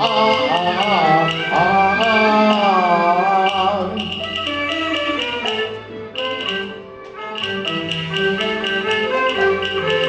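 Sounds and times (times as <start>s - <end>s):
opera melody with ensemble: 0.0s - 10.0s
light percussion taps: 3.5s - 10.0s.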